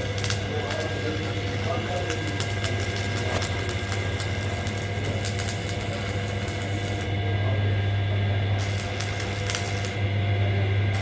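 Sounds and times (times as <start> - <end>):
machinery low hum: 0.0 - 11.0
crackling clicks: 0.1 - 7.0, 8.7 - 10.0.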